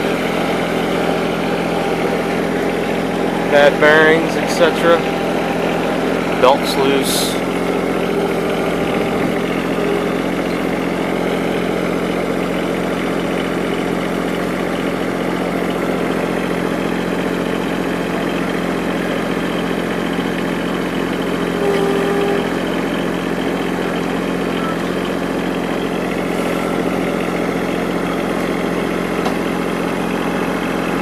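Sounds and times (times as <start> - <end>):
short whine: 0.0 - 11.6, 21.4 - 22.6, 26.0 - 31.0
tractor engine running: 0.0 - 31.0.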